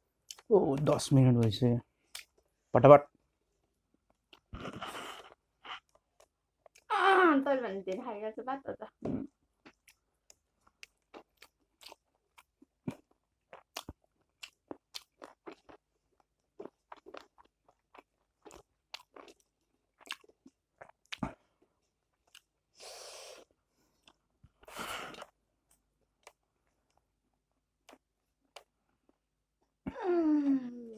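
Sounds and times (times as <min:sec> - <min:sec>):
wet mouth clicks: 0:00.3 - 0:02.4
crunchy chewing: 0:09.6 - 0:21.4.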